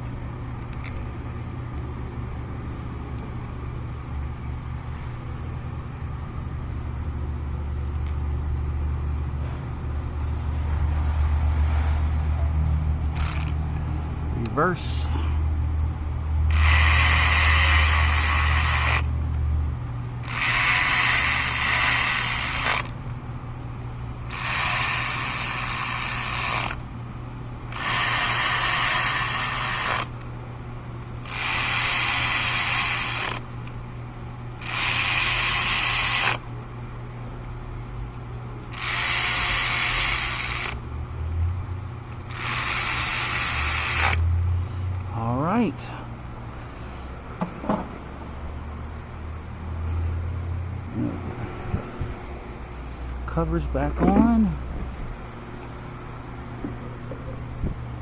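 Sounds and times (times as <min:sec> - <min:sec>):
ratchet wrench clicking: 0:13.2 - 0:13.6, 0:16.5 - 0:19.1, 0:20.2 - 0:23.0, 0:24.3 - 0:26.8, 0:27.7 - 0:30.2, 0:31.2 - 0:33.8, 0:34.6 - 0:36.4, 0:38.7 - 0:40.8, 0:42.1 - 0:44.5.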